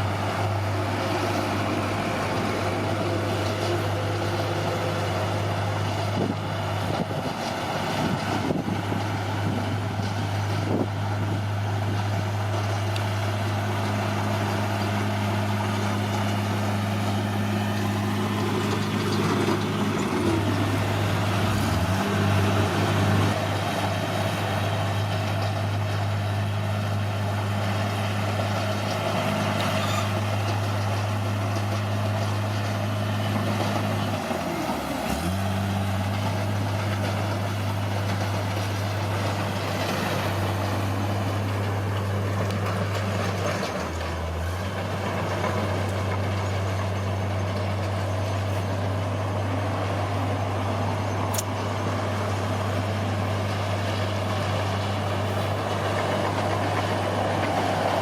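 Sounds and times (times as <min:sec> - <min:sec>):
bulldozer diesel engine running: 0:00.0 - 0:58.0.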